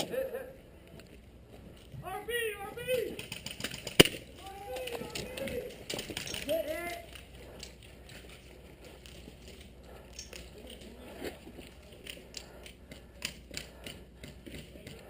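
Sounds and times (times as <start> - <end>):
sharp clicks and ticks: 3.2 - 10.9, 11.6 - 15.0.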